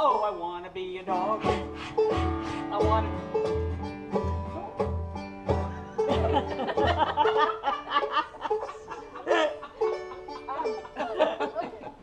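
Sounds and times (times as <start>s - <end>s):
banjo picking: 0.0s - 12.0s
bass line: 1.1s - 7.4s.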